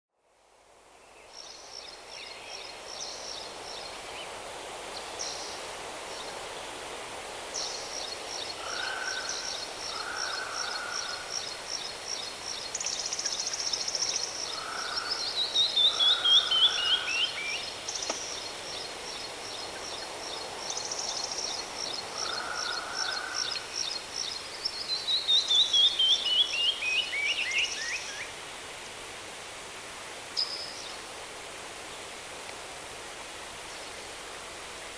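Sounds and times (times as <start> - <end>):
background hiss: 0.2 - 34.9
birds singing: 12.7 - 19.3.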